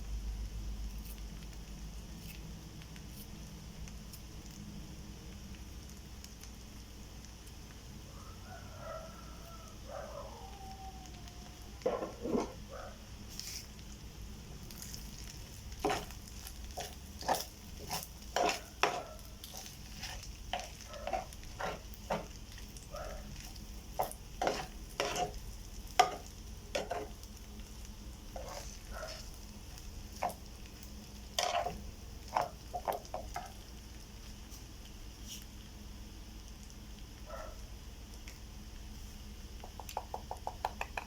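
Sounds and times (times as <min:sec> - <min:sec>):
rice sizzling in a pan: 0:00.0 - 0:41.0
spatula scraping a pan: 0:11.9 - 0:12.6, 0:15.8 - 0:22.6, 0:23.3 - 0:27.2, 0:28.3 - 0:29.4, 0:31.4 - 0:33.6.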